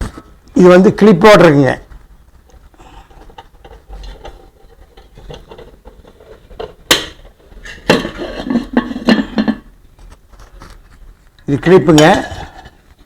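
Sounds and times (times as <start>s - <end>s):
earthenware lid clinking: 3.2s - 9.7s.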